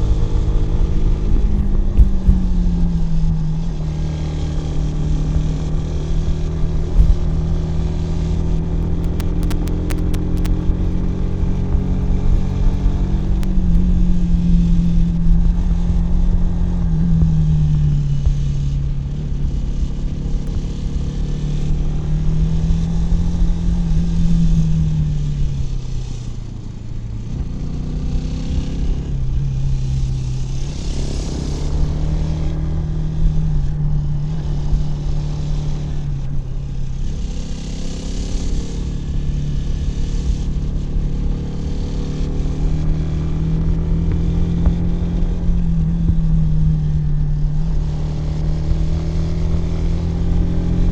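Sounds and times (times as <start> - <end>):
motorcycle engine while riding: 0.0 - 50.9.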